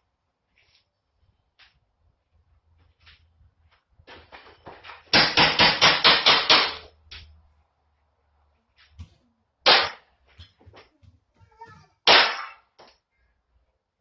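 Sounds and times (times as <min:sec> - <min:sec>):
rapid sharp knocks: 0:05.1 - 0:06.9.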